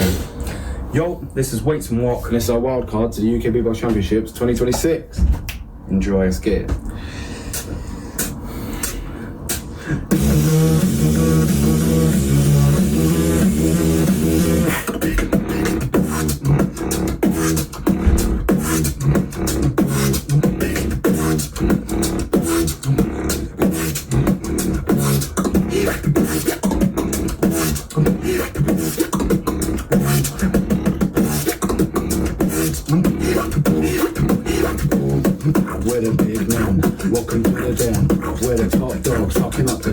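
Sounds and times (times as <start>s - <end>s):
beatboxing: 0.0s - 1.2s, 6.6s - 39.9s
held vocal tone: 0.0s - 1.4s, 7.2s - 39.9s
vocal bass line: 0.0s - 4.6s, 6.7s - 39.9s.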